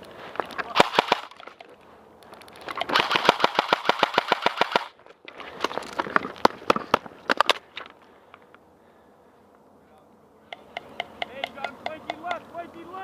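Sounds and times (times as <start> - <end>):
airsoft gun firing: 0.7 - 1.4, 2.8 - 5.0.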